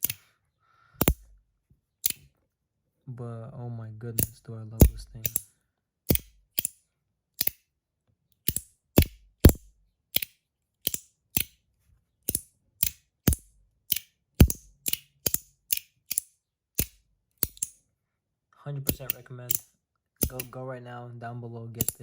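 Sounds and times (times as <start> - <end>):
metallic fidget clicks: 0.0 - 0.3, 4.2 - 5.4, 6.1 - 6.8, 7.4 - 7.6, 8.4 - 11.6, 12.3 - 17.8, 18.9 - 20.6, 21.8 - 22.0.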